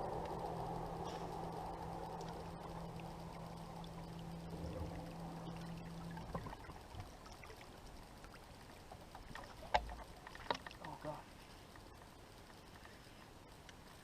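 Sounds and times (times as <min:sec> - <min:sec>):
water rushing and splashing: 0:00.0 - 0:11.6
low steady hum: 0:00.0 - 0:14.0.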